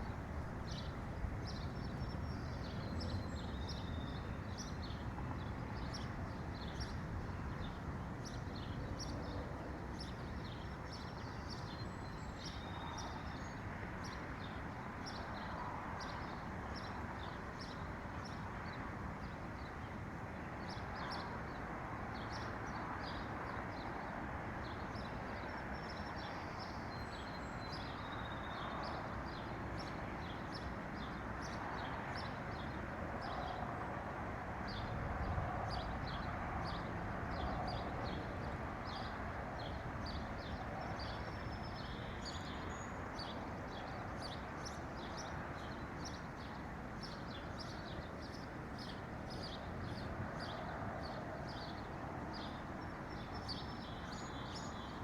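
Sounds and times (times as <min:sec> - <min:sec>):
songbirds chirping: 0:38.9 - 0:55.0.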